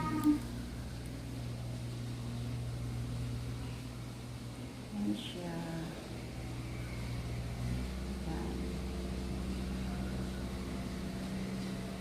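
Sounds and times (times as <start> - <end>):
steady mechanical hum: 0.0 - 12.0.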